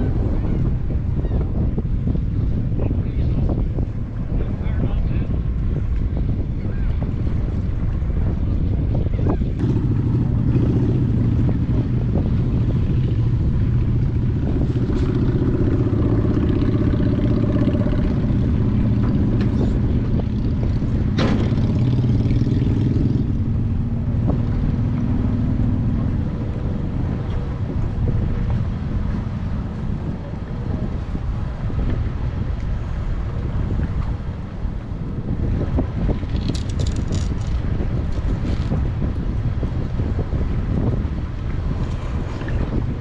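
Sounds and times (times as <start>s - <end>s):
wind on microphone: 0.0s - 43.0s
motor engine running: 8.6s - 41.0s.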